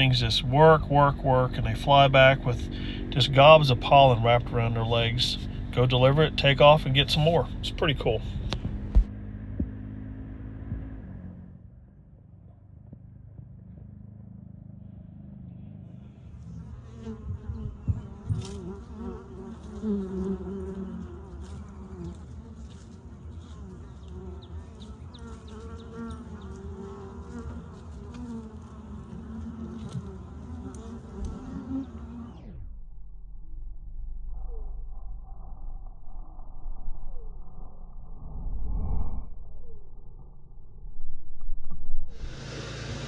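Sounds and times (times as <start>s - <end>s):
honeybees buzzing: 0.0s - 9.1s, 16.5s - 32.4s
low rumble: 0.0s - 16.9s, 32.4s - 43.0s.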